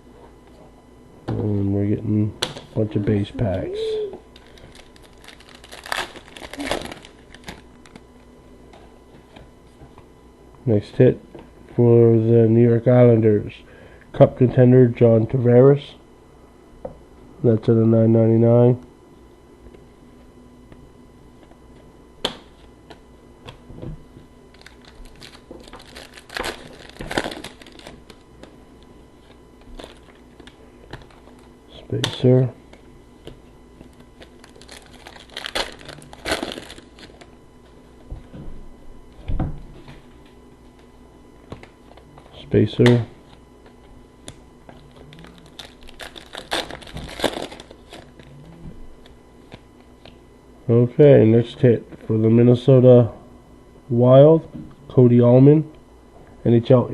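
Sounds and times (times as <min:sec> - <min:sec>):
plastic wrappers crinkling: 0:04.3 - 0:08.0, 0:24.5 - 0:31.5, 0:33.9 - 0:37.4, 0:44.8 - 0:48.4.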